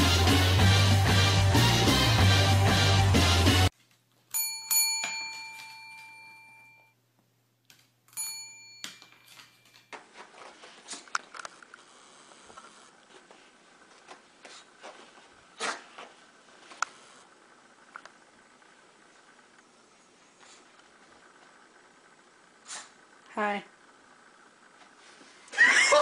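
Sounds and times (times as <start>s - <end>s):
metallic bell ding: 4.3s - 6.9s, 8.1s - 9.7s.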